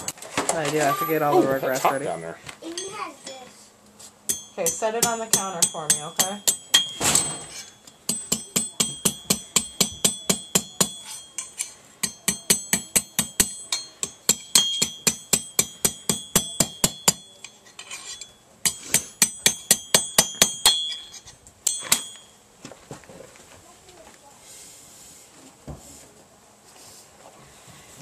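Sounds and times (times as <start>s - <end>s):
hammer striking steel on anvil: 4.3s - 22.4s.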